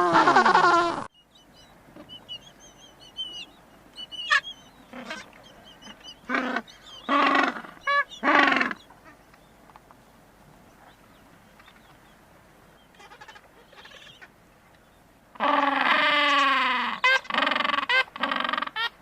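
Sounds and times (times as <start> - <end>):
penguin honking calls: 4.1 - 9.2
penguins calling: 4.1 - 9.2.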